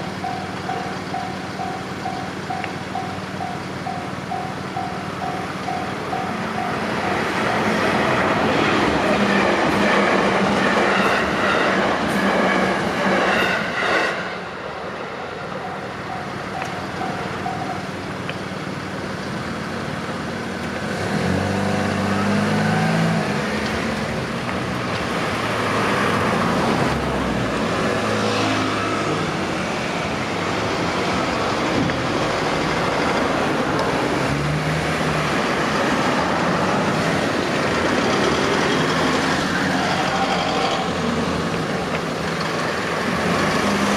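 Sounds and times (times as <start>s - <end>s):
level crossing warning alarm: 0.0s - 8.0s, 15.6s - 18.0s
road vehicle engines: 0.0s - 43.9s
train passing: 0.0s - 43.9s.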